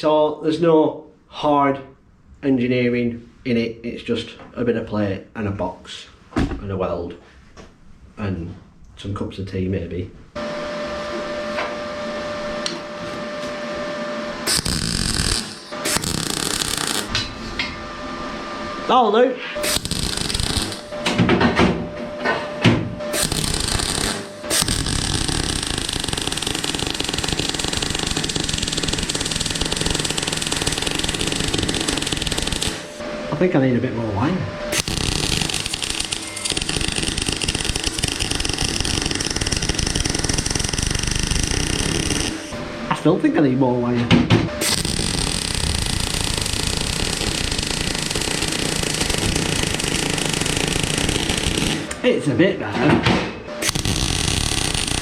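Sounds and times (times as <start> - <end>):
welding arc crackling: 14.4 - 17.3, 19.6 - 21.6, 23.0 - 33.1, 34.7 - 42.6, 44.6 - 52.1, 53.6 - 55.0.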